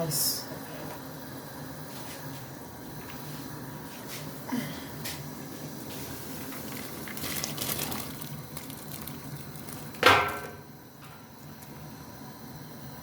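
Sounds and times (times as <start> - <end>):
rice and water pouring into pot: 5.8 - 10.6.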